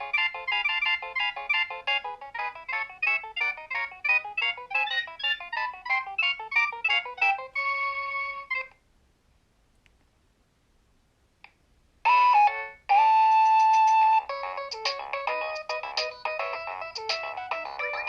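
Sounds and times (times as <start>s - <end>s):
mobile phone ringtone: 0.0s - 8.7s, 12.1s - 18.0s.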